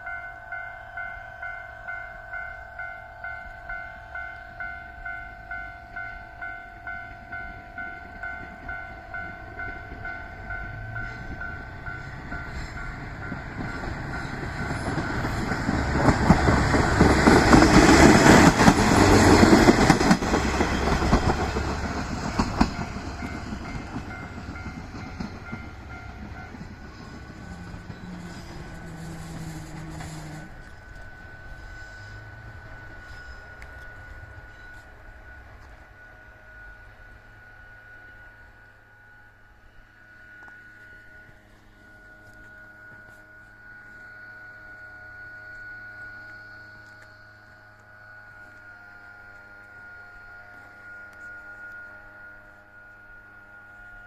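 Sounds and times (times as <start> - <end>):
level crossing warning bell: 0.0 - 39.5
train wheels rumbling and clattering: 7.7 - 36.5.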